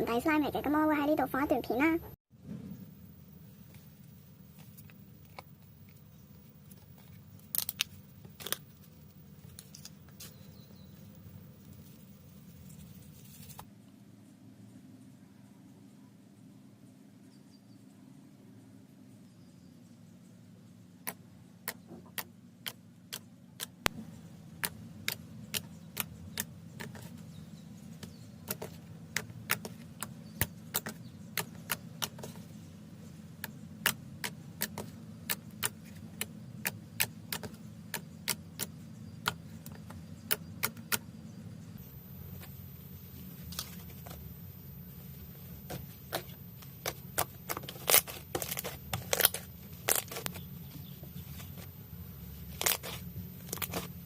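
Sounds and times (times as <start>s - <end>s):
steady low hum: 0.0s - 54.0s
faint high whine: 41.8s - 46.9s.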